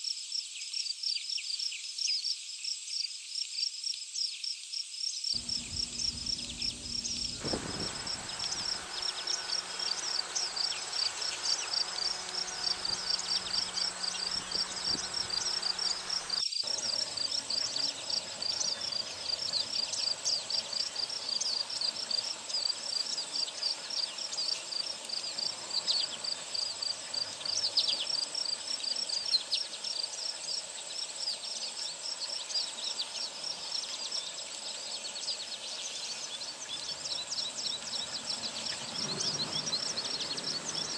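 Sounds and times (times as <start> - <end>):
downward-sweeping chirps: 5.4 - 16.4
rapid pulsing trill: 5.4 - 16.4.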